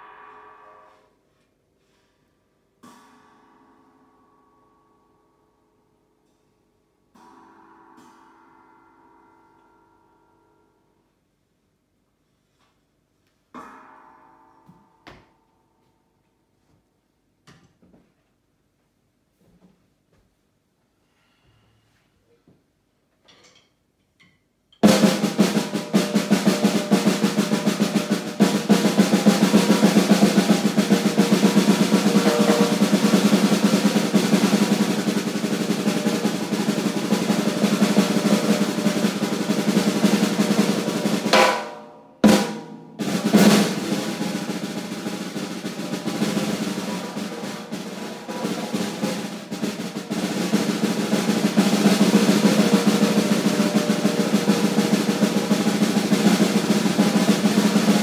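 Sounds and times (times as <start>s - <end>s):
snare drum roll: 24.8s - 58.0s.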